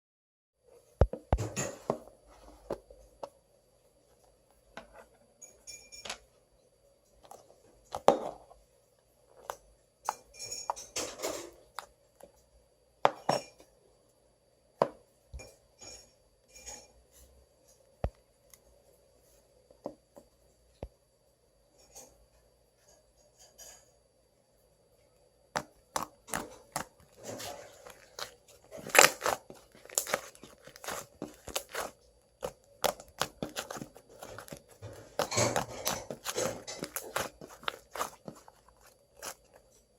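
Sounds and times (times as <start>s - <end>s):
sticky slime noises: 25.6s - 39.9s.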